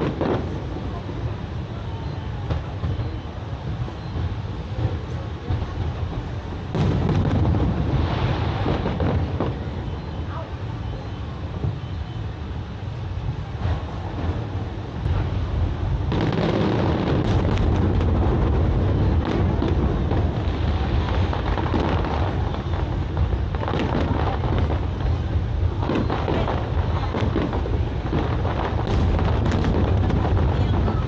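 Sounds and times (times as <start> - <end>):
fireworks booming and banging: 0.0 - 31.0.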